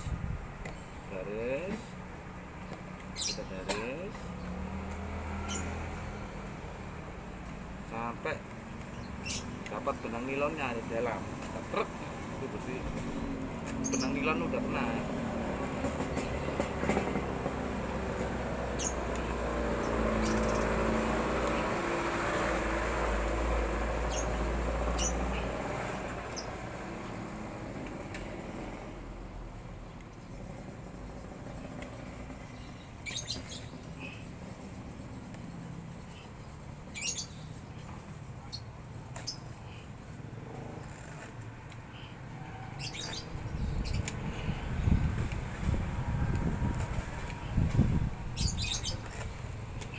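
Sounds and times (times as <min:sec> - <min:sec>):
low engine rumble: 0:43.1 - 0:49.9.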